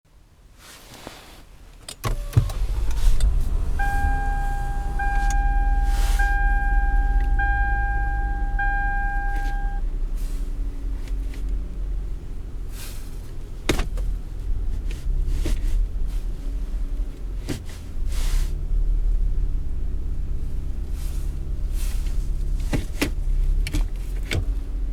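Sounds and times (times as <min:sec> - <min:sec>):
car engine starting and idling: 0:01.6 - 0:24.9
dashboard warning chime: 0:02.8 - 0:09.8.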